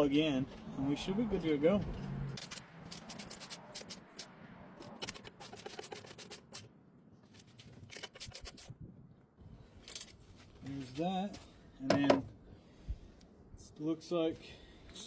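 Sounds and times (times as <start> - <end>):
metal scraping: 1.8 - 6.7.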